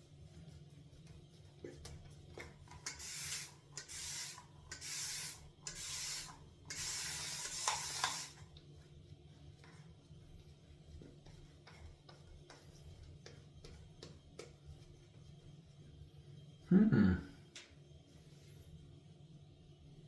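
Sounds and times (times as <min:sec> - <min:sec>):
shaving brush rubbing lather: 0:03.0 - 0:08.4.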